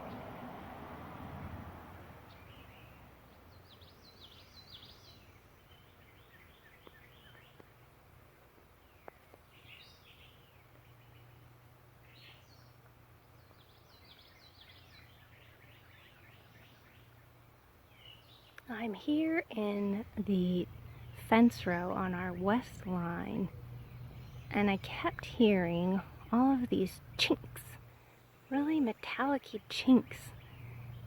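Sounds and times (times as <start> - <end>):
songbirds singing: 1.4 - 31.0
low steady hum: 16.9 - 31.0.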